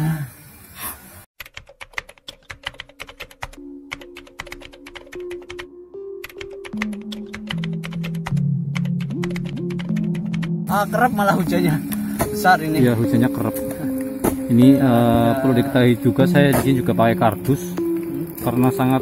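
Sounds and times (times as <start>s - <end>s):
keyboard typing clicks: 1.4s - 10.6s
background music with low notes: 3.5s - 19.0s.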